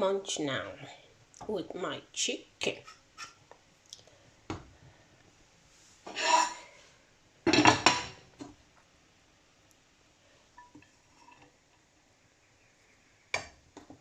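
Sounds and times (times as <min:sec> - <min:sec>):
dishes clattering and clinking: 0:07.5 - 0:08.5.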